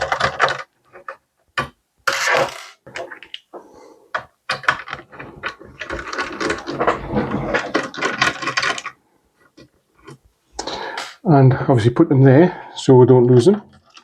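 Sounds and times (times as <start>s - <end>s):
rapid clicking and scraping: 4.2s - 11.1s
clicks and knocks: 4.2s - 11.2s.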